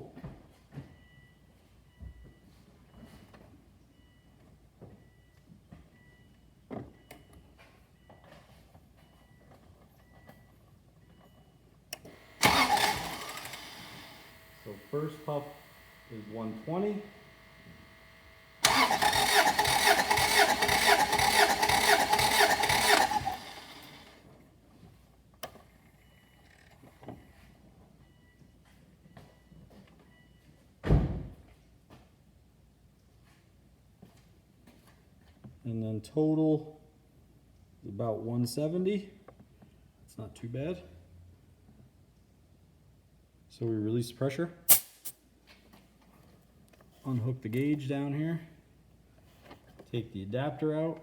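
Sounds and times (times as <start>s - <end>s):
car engine cranking: 12.0s - 24.1s
sharp click: 44.7s - 45.2s.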